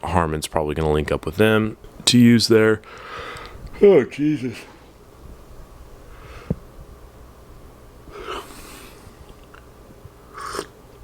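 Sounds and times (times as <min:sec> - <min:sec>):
man exhaling and sniffing: 0:08.1 - 0:09.2.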